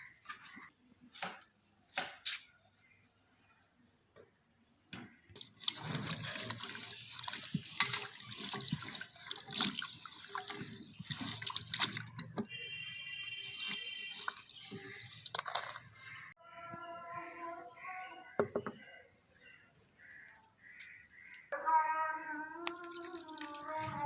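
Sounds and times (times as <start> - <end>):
water splashing and dripping: 5.3 - 16.4, 20.3 - 21.6, 22.4 - 24.0.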